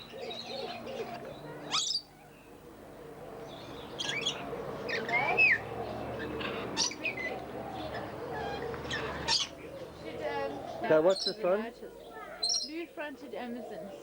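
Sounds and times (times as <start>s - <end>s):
low cooing calls: 0.0s - 12.8s
sharp high bird calls: 8.4s - 11.4s.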